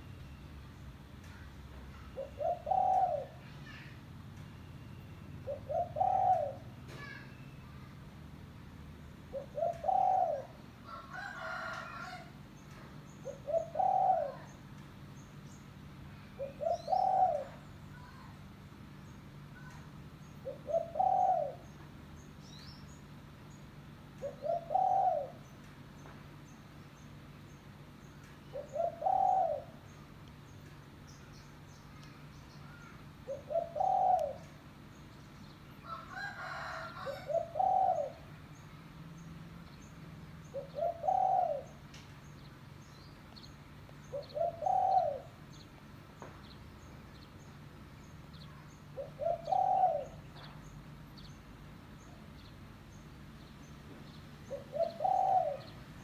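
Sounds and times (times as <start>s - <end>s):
dove cooing: 1.9s - 3.9s, 5.3s - 7.2s, 9.3s - 12.3s, 13.2s - 14.6s, 16.2s - 18.2s, 20.4s - 21.8s, 24.2s - 25.5s, 28.5s - 30.0s, 32.7s - 34.8s, 35.8s - 38.4s, 40.4s - 41.9s, 44.1s - 45.6s, 48.6s - 50.6s, 54.4s - 56.0s.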